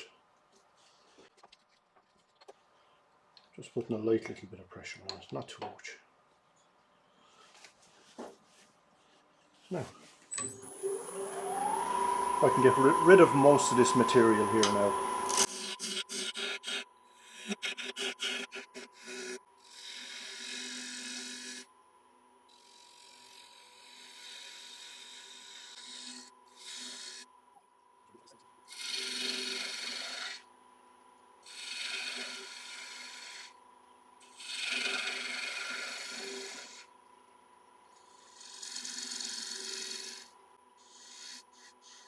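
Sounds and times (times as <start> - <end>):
gouge cutting wood on a lathe: 10.5 - 21.7, 22.5 - 27.3, 28.7 - 30.4, 31.4 - 33.6, 34.2 - 36.9, 37.9 - 42.0.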